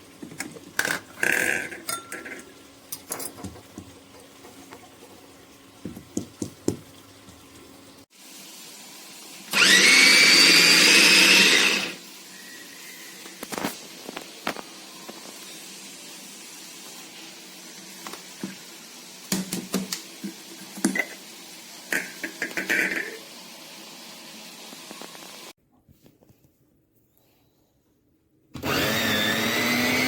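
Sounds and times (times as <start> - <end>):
food processor motor: 9.5 - 12.0, 28.6 - 30.0.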